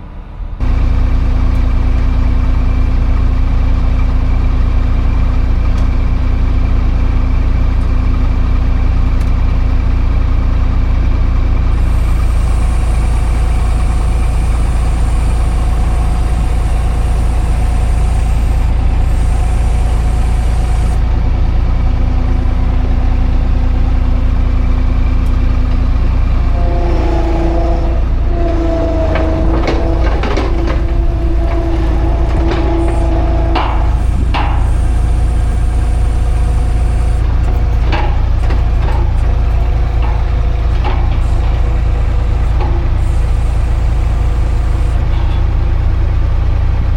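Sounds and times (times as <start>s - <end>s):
machinery engine idling: 0.0s - 46.9s
steady whine: 11.8s - 45.4s
sharp metallic knocks: 26.6s - 37.1s.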